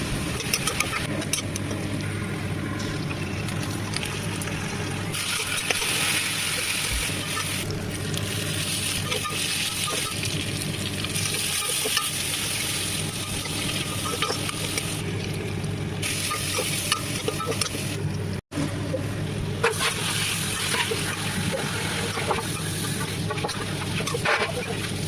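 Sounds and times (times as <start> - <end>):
curry sizzling in a pan: 4.1 - 18.0, 19.6 - 25.0.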